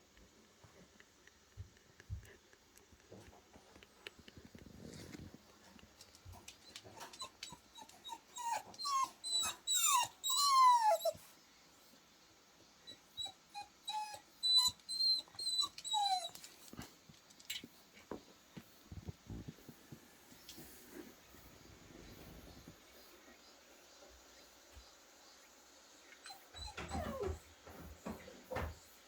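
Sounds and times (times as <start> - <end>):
dog whimpering: 7.0 - 11.2, 13.2 - 16.3, 26.2 - 28.7.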